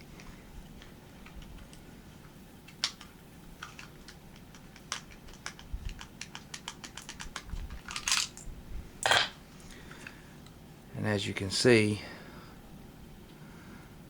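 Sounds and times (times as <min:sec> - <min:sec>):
pistol parts clicking and rattling: 0:02.7 - 0:08.4.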